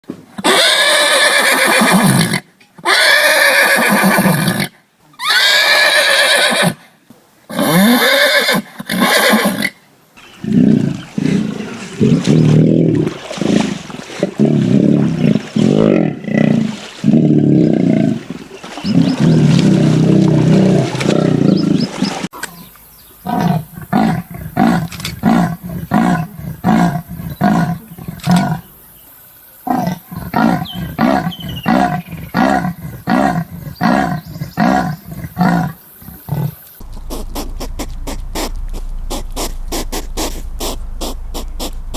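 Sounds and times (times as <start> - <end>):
horse whinnying: 0.4 - 6.8, 7.5 - 9.8.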